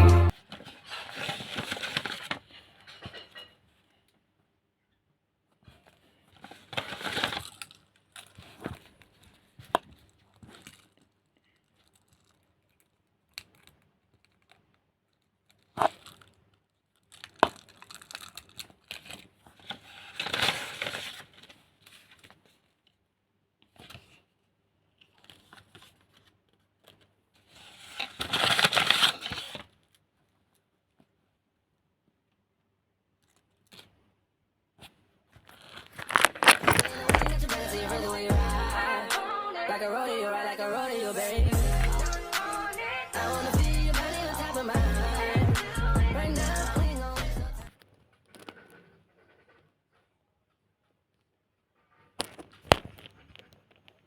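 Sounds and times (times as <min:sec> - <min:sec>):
packaging torn and crinkled: 0:17.0 - 0:19.3, 0:27.8 - 0:30.0, 0:35.5 - 0:38.0.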